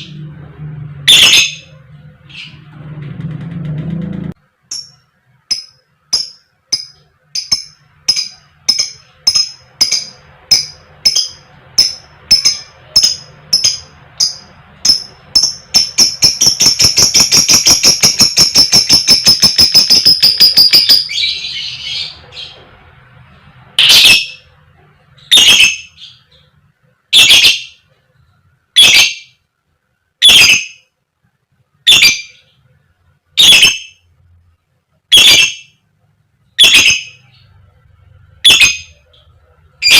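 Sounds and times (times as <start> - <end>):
lovebird chirping calls: 1.1 - 2.6, 4.7 - 22.6, 23.8 - 24.6, 25.2 - 27.8, 28.8 - 29.4, 30.2 - 30.9, 31.8 - 32.6, 33.4 - 34.0, 35.1 - 35.8, 36.6 - 37.6, 38.4 - 39.9.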